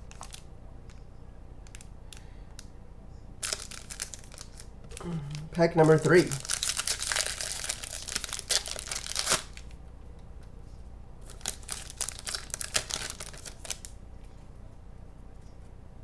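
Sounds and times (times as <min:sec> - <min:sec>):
card pack wrapper crinkling: 0:00.0 - 0:00.4, 0:03.4 - 0:09.8, 0:11.2 - 0:13.9.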